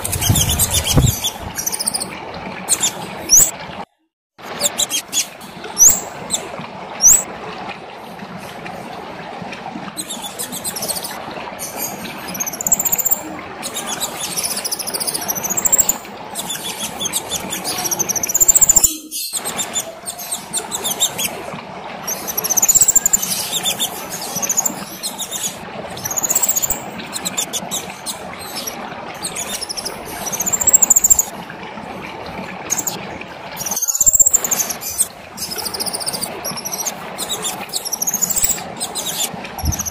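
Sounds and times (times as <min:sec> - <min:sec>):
songbird singing: 0:05.8 - 0:06.1, 0:07.0 - 0:07.2, 0:12.4 - 0:13.2, 0:14.2 - 0:16.0, 0:17.7 - 0:19.4, 0:22.2 - 0:23.7, 0:26.0 - 0:27.4, 0:28.5 - 0:31.3, 0:33.6 - 0:35.0, 0:37.8 - 0:38.6.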